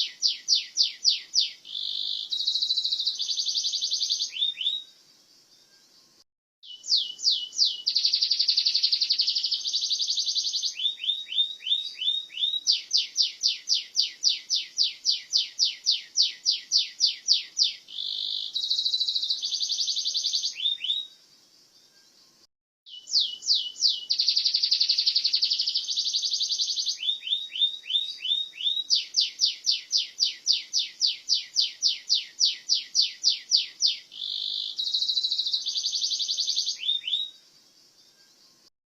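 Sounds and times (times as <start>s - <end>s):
canary singing trills: 0.0s - 5.0s, 6.6s - 21.2s, 22.3s - 38.7s.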